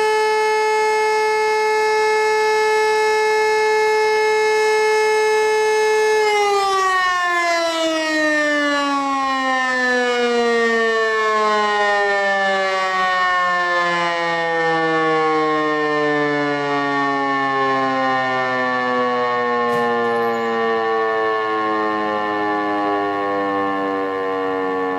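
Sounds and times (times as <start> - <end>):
fire siren winding down: 0.0 - 24.9.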